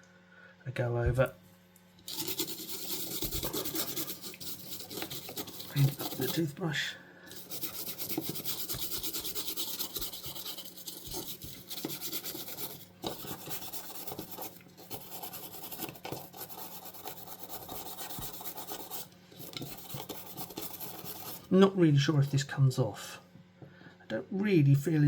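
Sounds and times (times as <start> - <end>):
toothbrush scrubbing circuit board: 2.1 - 6.6, 7.3 - 21.5.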